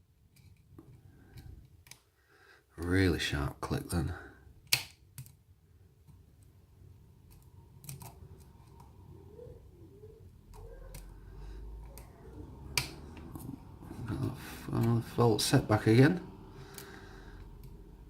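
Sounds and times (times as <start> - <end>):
lock pick metallic clicks: 4.6 - 5.4.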